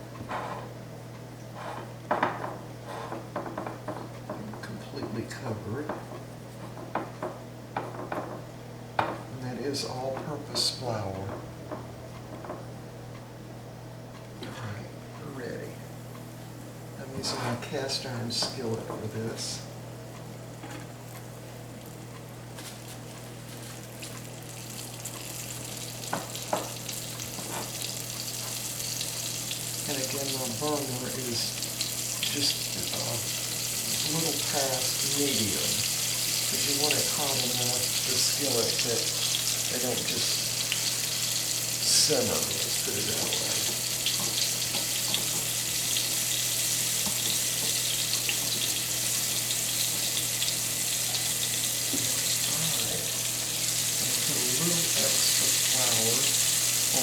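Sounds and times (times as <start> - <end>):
patties sizzling in skillet: 20.9 - 57.0.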